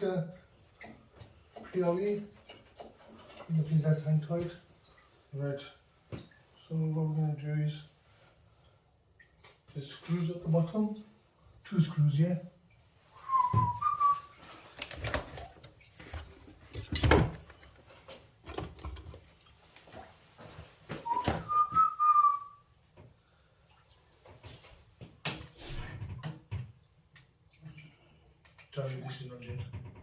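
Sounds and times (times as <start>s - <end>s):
man whistling: 13.2s - 14.3s, 21.0s - 22.6s.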